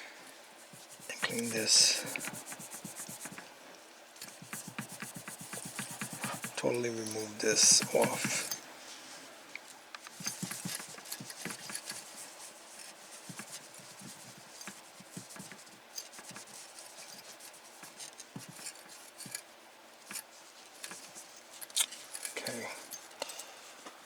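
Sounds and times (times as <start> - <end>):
wipe scrubbing: 0.6 - 3.4, 4.2 - 8.5.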